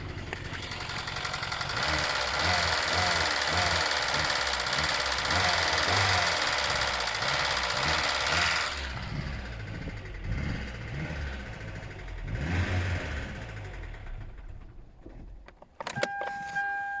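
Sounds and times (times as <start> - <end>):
car engine knocking and surging: 0.0 - 15.7
clicks: 15.0 - 16.9.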